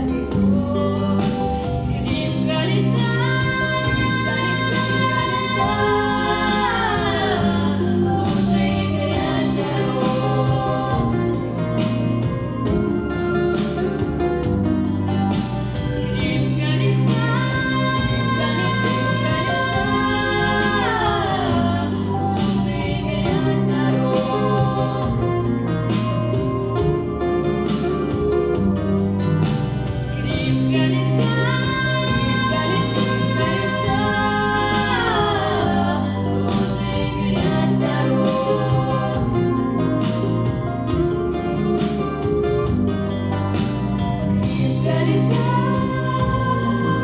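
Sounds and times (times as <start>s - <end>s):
girls singing in harmony: 0.0s - 12.9s, 15.8s - 26.1s, 30.0s - 41.1s, 44.2s - 47.0s
instrumental backing with bass: 0.0s - 47.0s.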